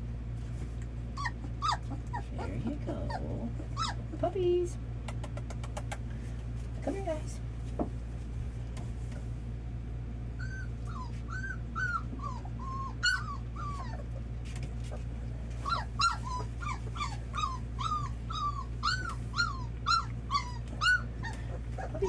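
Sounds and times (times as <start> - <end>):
puppies whimpering: 1.1 - 4.2, 10.4 - 22.0.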